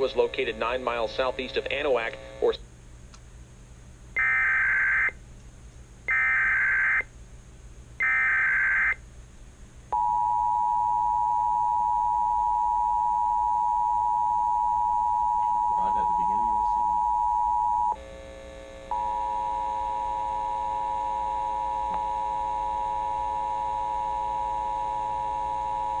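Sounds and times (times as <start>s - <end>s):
two-tone attention signal: 10.0s - 18.0s
warbling digital data bursts: 15.8s - 18.0s.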